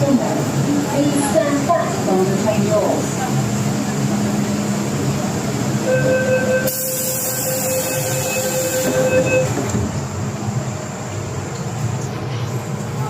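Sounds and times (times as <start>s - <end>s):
train rumbling: 0.0s - 13.0s
door-closing warning tone: 5.8s - 9.8s.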